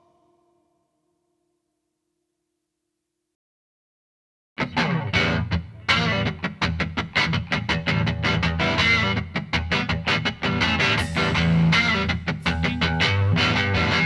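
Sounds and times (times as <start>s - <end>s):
rock music with electric guitar: 4.6s - 14.0s.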